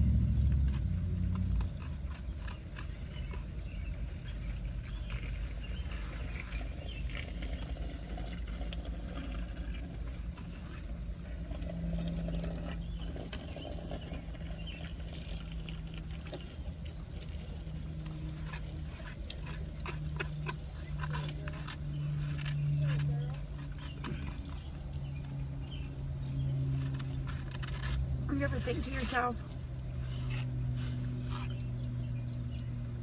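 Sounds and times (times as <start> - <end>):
car idling: 20.4 - 33.0.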